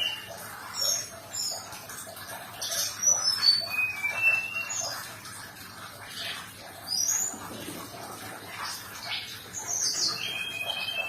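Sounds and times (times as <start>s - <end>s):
bird singing whistled notes: 3.1s - 5.0s, 9.7s - 11.0s.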